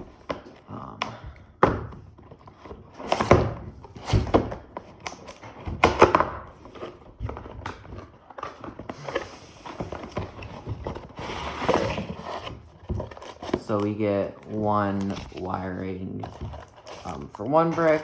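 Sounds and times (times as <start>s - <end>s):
cardboard rubbing and sliding: 6.5s - 18.0s.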